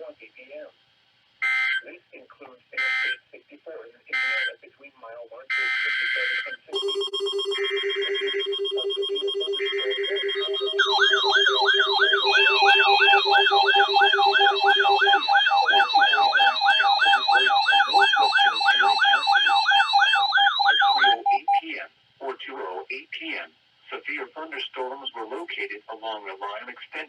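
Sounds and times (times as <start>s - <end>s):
warbling attention tone: 6.7s - 21.2s.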